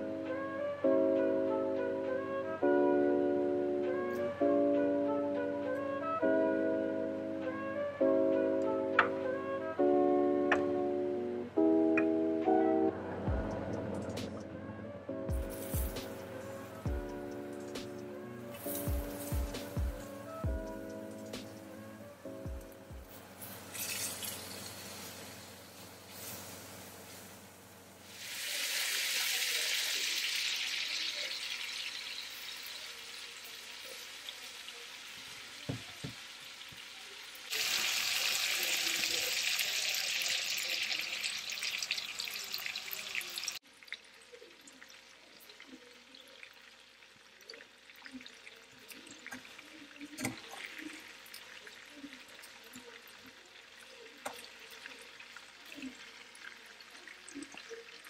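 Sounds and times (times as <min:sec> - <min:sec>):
food sizzling in hot oil: 0:15.4 - 0:58.0.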